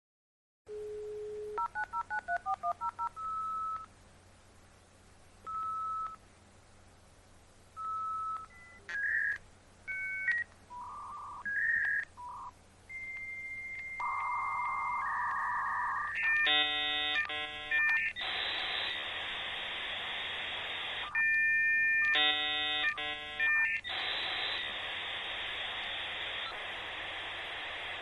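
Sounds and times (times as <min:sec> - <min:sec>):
dial-up modem tones: 0:00.7 - 0:03.9, 0:05.5 - 0:06.2, 0:07.8 - 0:28.0
modem handshake beeps: 0:07.8 - 0:18.4.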